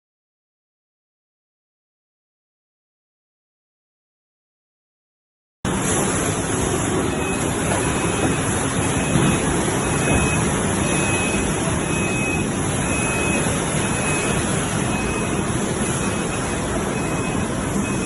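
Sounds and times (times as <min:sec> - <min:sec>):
production line machinery din: 0:05.7 - 0:18.0.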